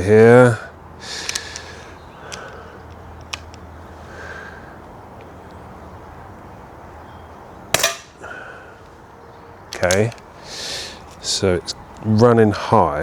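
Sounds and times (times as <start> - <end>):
air pistol shot crack: 7.8 - 8.2.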